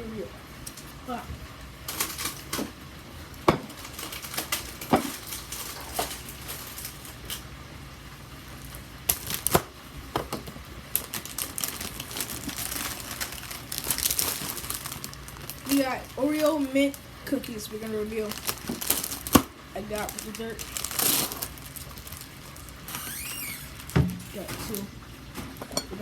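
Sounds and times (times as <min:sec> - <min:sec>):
packaging crinkling: 0:01.9 - 0:02.7, 0:03.7 - 0:07.5, 0:08.5 - 0:09.7, 0:10.9 - 0:25.0.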